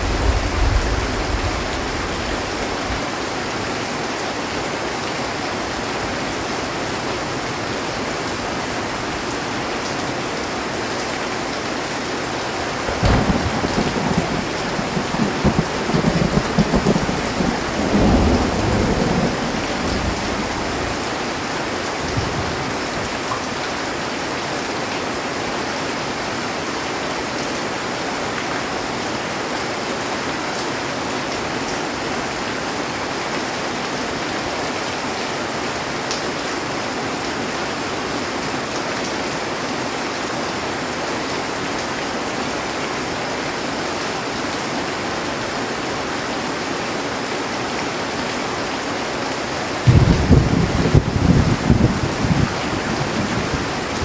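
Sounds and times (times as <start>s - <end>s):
low thunder rumble: 0.0s - 3.1s, 12.6s - 22.8s, 49.9s - 54.0s
heavy rain on a metal roof: 0.0s - 54.0s.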